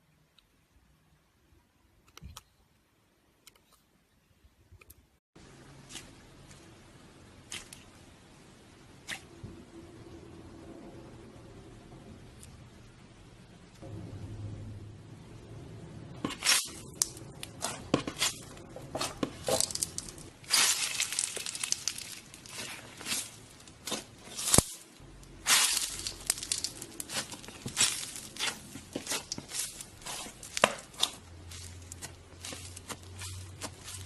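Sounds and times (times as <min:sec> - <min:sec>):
slime crackling and popping: 0:16.3 - 0:18.4, 0:19.0 - 0:34.0
slime swishing when stretched: 0:26.6 - 0:34.0.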